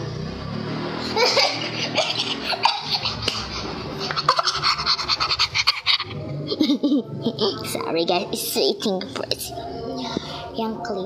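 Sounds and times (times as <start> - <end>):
girl giggling: 1.2 - 7.6.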